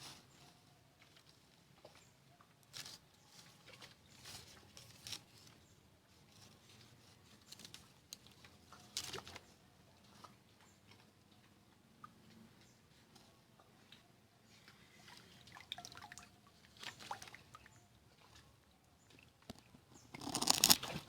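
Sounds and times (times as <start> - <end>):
faint clicks and rustles: 0.0 - 15.2.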